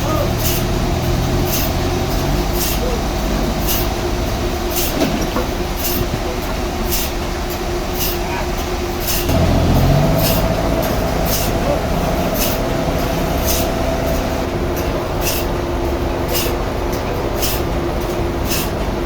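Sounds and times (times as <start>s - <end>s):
sawmill machinery humming: 9.3s - 19.0s.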